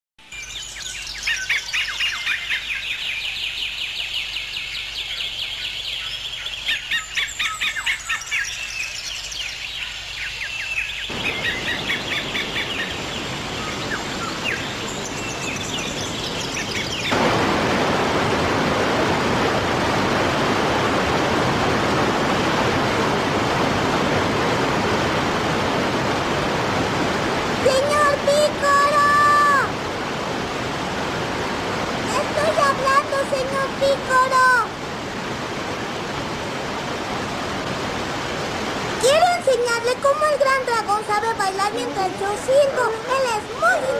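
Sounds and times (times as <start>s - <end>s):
birds chirping: 0.2s - 18.3s
rushing water: 1.0s - 43.9s.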